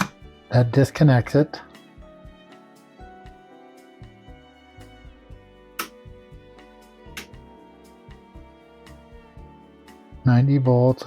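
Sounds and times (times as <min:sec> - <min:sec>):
soft background music: 0:00.0 - 0:11.0
low regular beat: 0:04.0 - 0:09.7.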